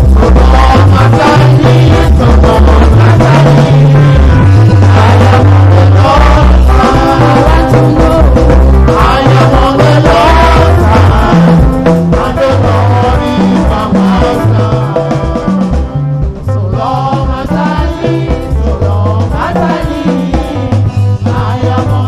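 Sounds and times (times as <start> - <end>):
bass line: 0.0 - 22.0
drums: 0.0 - 22.0
people singing: 0.0 - 22.0.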